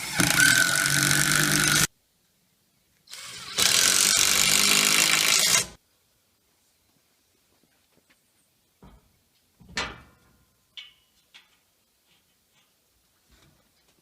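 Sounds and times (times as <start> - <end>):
power drill driving screws: 0.0 - 1.9, 3.1 - 5.8.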